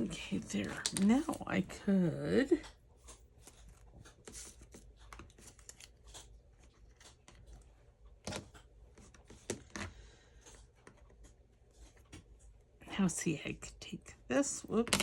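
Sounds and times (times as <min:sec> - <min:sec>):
paper rustling and crinkling: 0:03.0 - 0:09.9.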